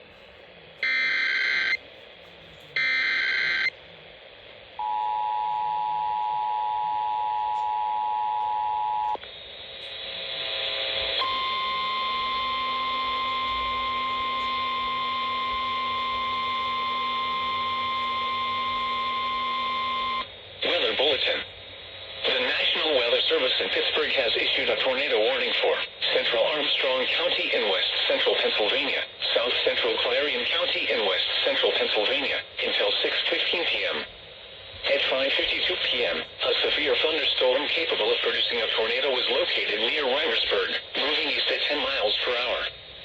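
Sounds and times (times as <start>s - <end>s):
radio hiss: 0.0s - 4.8s, 6.2s - 43.0s
steady warning tone: 0.8s - 1.8s, 2.8s - 3.8s, 9.8s - 21.5s
two-tone attention signal: 11.2s - 20.2s.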